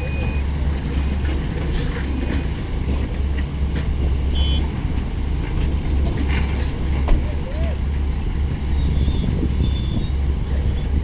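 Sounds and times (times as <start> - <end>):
diesel machinery rumbling: 0.0 - 11.0
knocks and clanks: 4.9 - 7.4.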